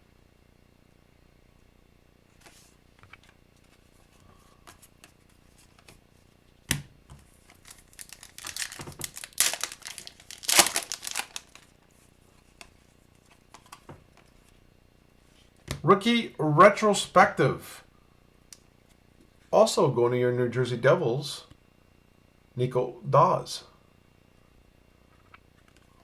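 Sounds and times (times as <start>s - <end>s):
foil wrapper tearing and crinkling: 7.5s - 11.8s.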